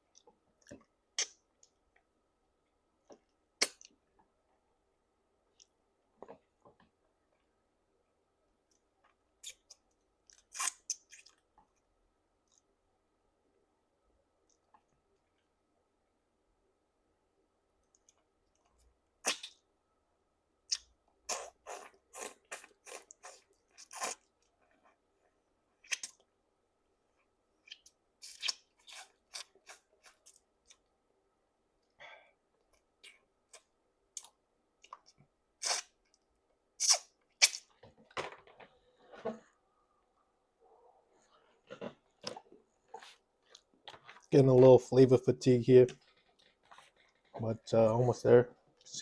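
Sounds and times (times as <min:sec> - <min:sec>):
person chewing with wet smacks: 0:03.1 - 0:04.0, 0:08.7 - 0:11.8, 0:20.7 - 0:25.0, 0:25.8 - 0:26.3, 0:27.6 - 0:30.9, 0:32.7 - 0:36.2, 0:36.8 - 0:37.7, 0:42.2 - 0:44.3.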